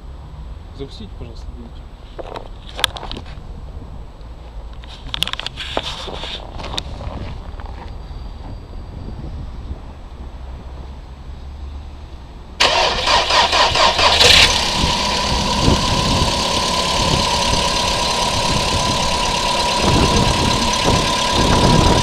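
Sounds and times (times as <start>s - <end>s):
car engine idling with whine: 12.6s - 22.0s
starter cranking car engine: 12.6s - 22.0s.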